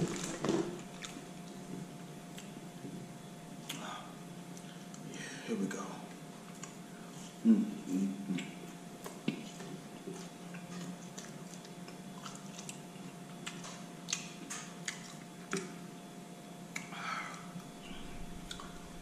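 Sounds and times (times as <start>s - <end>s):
person chewing food: 8.3s - 15.8s
mouth clicks and smacks: 13.4s - 15.8s, 16.7s - 17.4s.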